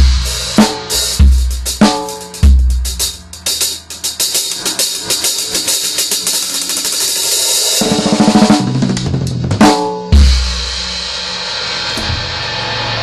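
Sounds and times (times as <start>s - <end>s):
drum kit playing: 0.0s - 13.0s
tom drum strokes: 7.6s - 13.0s.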